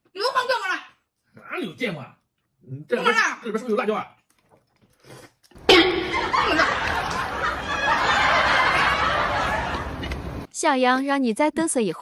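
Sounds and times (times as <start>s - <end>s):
crowd laughing: 5.7s - 10.5s.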